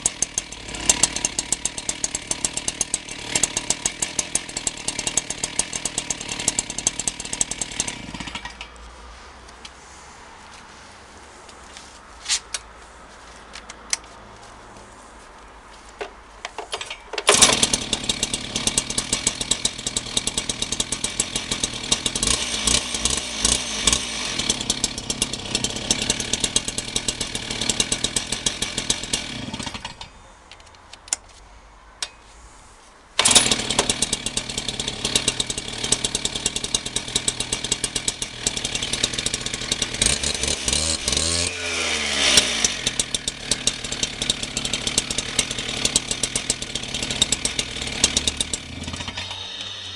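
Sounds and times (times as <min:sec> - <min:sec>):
cut-off saw engine idling: 0:00.0 - 0:08.8, 0:17.3 - 0:30.2, 0:33.2 - 0:49.9.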